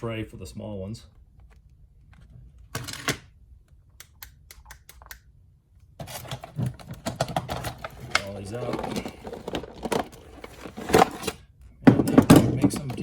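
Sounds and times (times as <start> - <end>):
plastic tray scraping rustle: 6.0 - 11.4.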